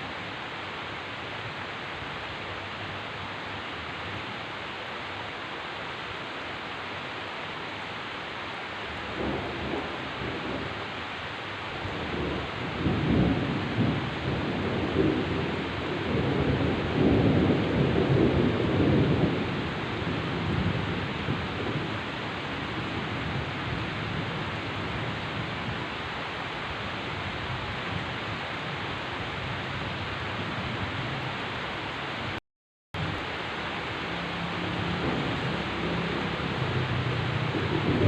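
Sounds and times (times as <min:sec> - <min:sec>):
heavy rain pouring: 0:00.0 - 0:32.4, 0:33.0 - 0:38.0
low thunder rumble: 0:09.0 - 0:10.9, 0:11.7 - 0:26.0, 0:33.0 - 0:38.0.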